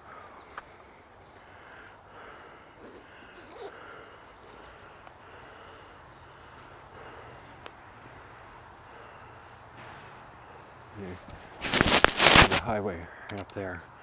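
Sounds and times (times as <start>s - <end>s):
faint steady hiss: 0.0s - 14.0s.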